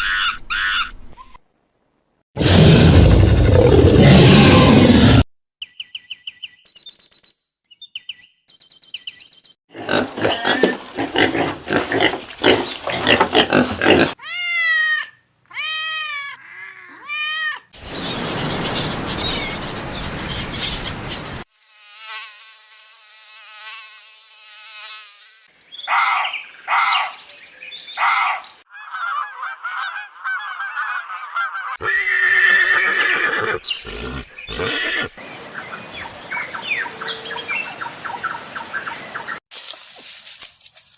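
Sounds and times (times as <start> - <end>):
rough noisy animal call: 9.7 - 14.2
loud animal cry: 9.7 - 17.7, 28.0 - 35.2
animal squealing calls: 28.0 - 35.2.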